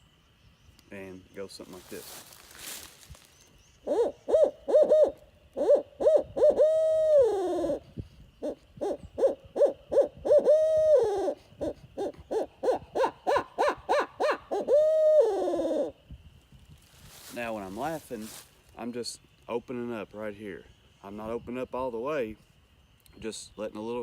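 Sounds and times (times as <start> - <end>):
owl call hooting: 1.2 - 16.0.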